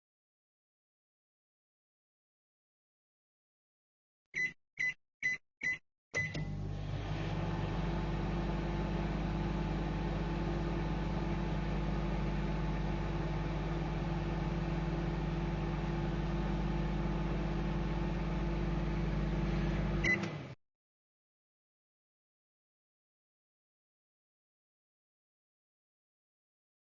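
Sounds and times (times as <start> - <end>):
microwave beep: 4.4 - 6.8, 20.0 - 20.4
microwave oven humming: 6.2 - 20.6.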